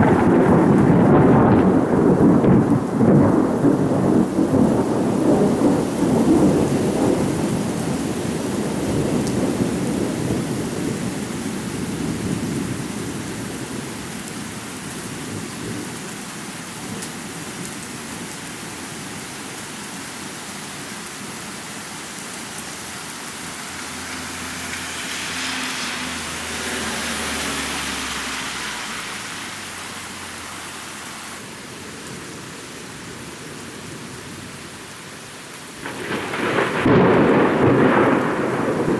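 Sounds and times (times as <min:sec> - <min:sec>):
thunder rumbling: 0:00.0 - 0:14.2, 0:23.9 - 0:30.2, 0:35.8 - 0:38.9
steady rain: 0:00.0 - 0:38.9.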